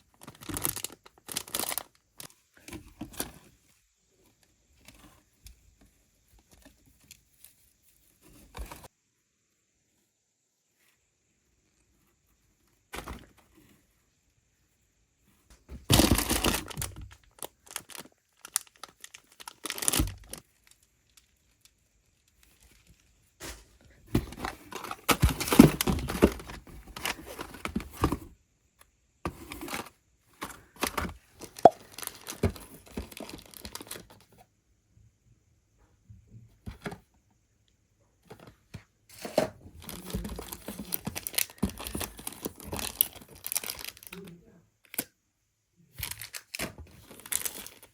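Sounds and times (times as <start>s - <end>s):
packaging tearing and crinkling: 0.2s - 2.3s, 15.9s - 23.0s, 24.2s - 27.7s, 30.5s - 34.1s, 39.2s - 44.2s, 46.0s - 47.9s.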